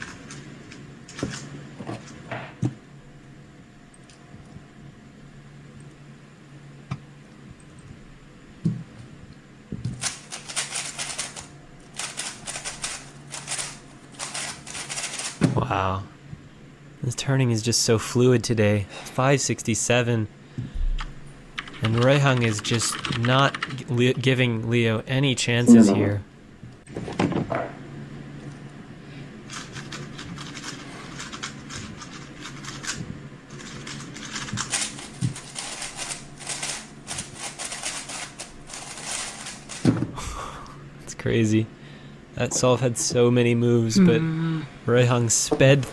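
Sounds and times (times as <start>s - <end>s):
puzzle cube clicking rapidly: 10.0s - 15.5s, 21.6s - 24.1s, 29.5s - 39.9s.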